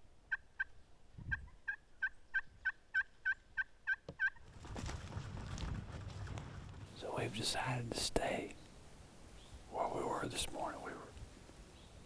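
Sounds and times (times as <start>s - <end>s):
turkey yelps: 1.3s - 4.4s.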